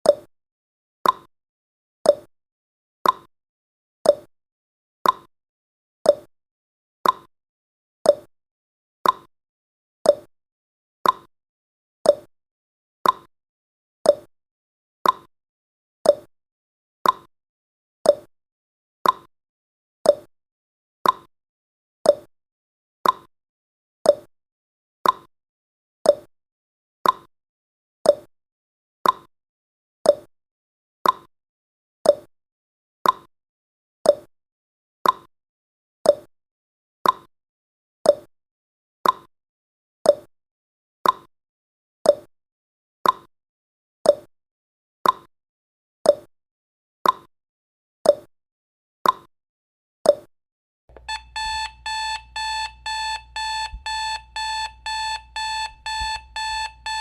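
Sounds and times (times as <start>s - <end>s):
digital alarm clock beeping: 50.9s - 57.0s
timer ticking: 50.9s - 57.0s.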